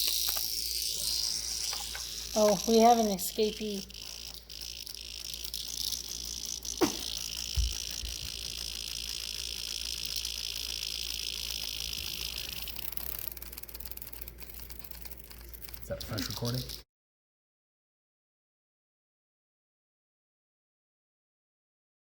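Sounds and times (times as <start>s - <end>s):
cicada buzzing: 0.0s - 16.8s.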